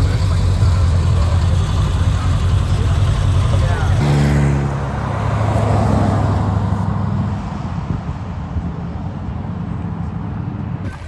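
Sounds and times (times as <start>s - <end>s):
car engine running: 0.0s - 5.1s.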